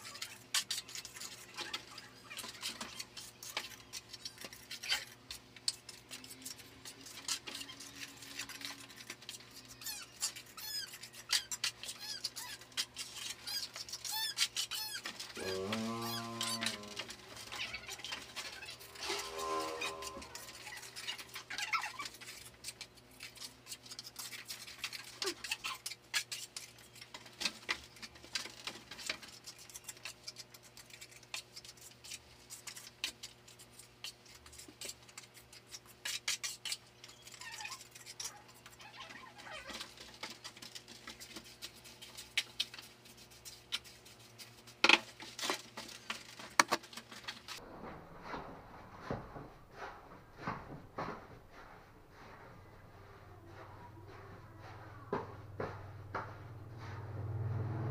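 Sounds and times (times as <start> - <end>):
steady low hum: 15.4 - 21.3, 47.5 - 57.9
short pitched sound: 18.8 - 20.5.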